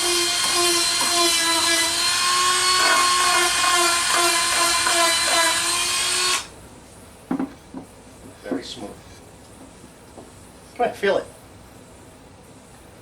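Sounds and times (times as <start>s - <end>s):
rotary tool sanding wood: 0.0s - 6.5s.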